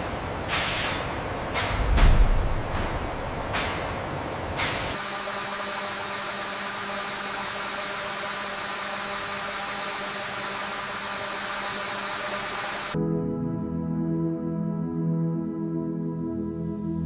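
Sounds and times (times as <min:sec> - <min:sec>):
constant hum: 0:00.0 - 0:05.0
machinery running: 0:01.2 - 0:13.0.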